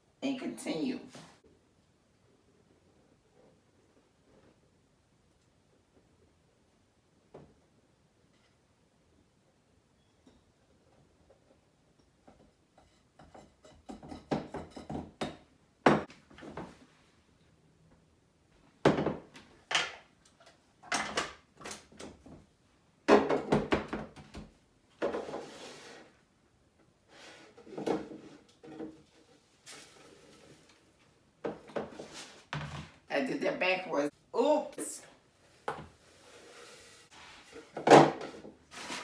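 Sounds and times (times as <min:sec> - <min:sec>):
containers knocking and clattering: 0:23.1 - 0:24.3.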